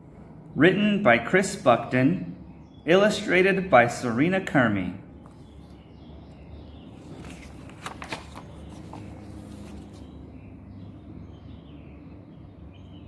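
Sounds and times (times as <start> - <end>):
paper rustling: 6.8 - 10.4.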